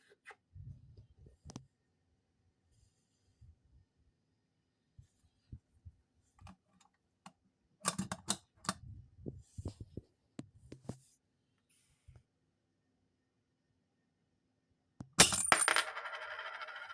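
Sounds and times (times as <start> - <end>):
mechanical clicks of coin bank: 7.9 - 8.4.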